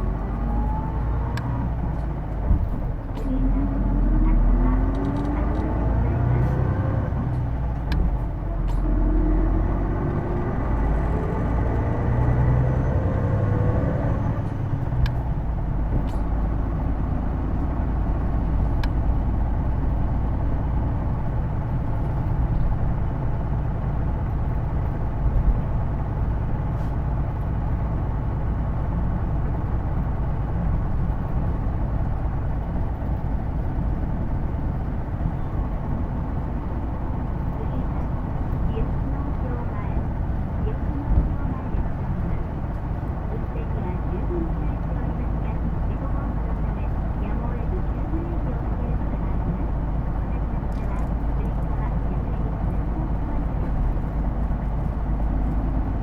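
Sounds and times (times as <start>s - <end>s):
bus drivetrain whine: 0.0s - 56.0s
engine and road rumble: 0.0s - 56.0s.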